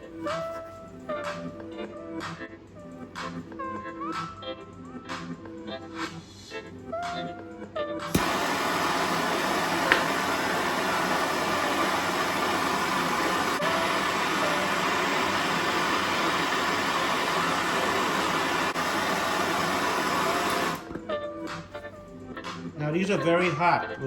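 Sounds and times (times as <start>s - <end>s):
gas torch hissing: 8.1s - 21.0s.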